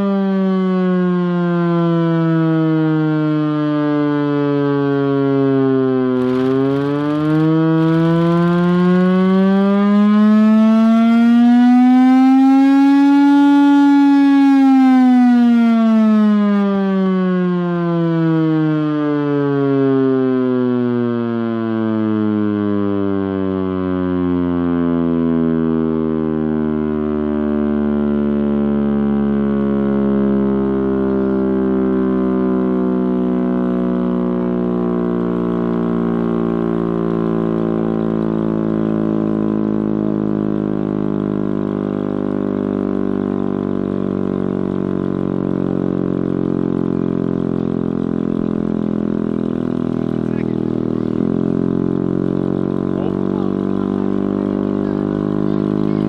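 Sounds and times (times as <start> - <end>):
air raid siren drone: 0.0 - 56.0
low engine rumble: 43.1 - 56.0.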